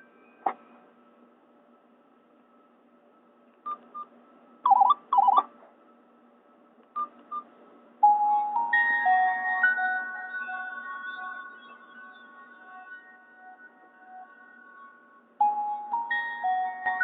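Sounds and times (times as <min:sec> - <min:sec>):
electronic ringtone melody: 0:04.7 - 0:05.4, 0:08.0 - 0:17.0.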